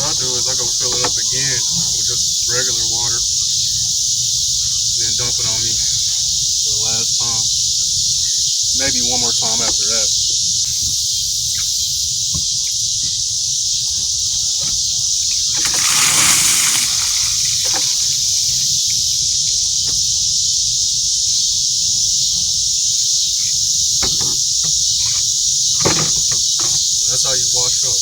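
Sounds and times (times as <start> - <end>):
insects chorus: 0.0 - 28.0
water splashing over person: 15.3 - 18.8.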